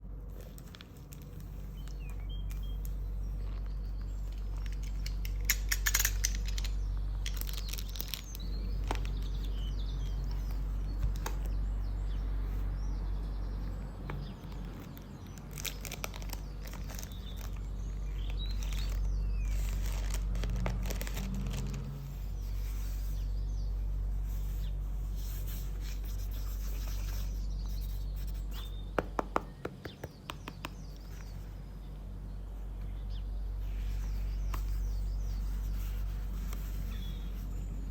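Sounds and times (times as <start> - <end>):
birds chirping: 0.0 - 37.9
steady low hum: 0.0 - 37.9
packaging crinkling and tearing: 0.2 - 11.5, 14.4 - 23.1.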